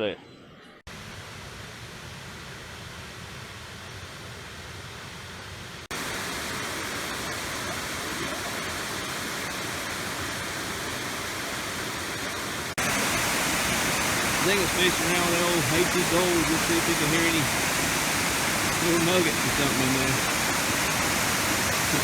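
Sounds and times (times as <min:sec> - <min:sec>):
waterfall rushing: 0:05.9 - 0:22.0.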